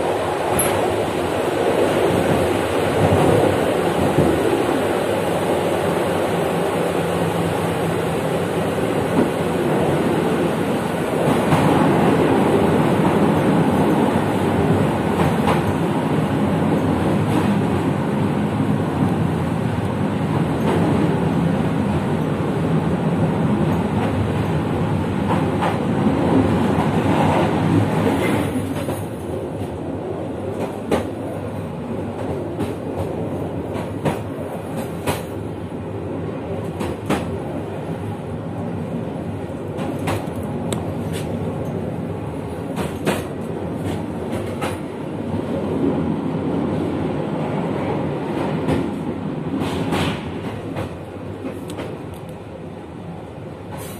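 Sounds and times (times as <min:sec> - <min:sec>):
train wheels rumbling on rails: 0:00.0 - 0:53.9
clacks over rail joints: 0:42.7 - 0:44.9.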